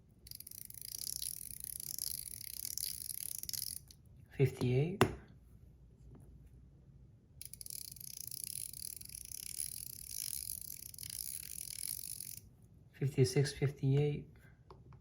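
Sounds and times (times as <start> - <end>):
metal fidget clicking rapidly: 0.3 - 3.9, 7.4 - 12.4.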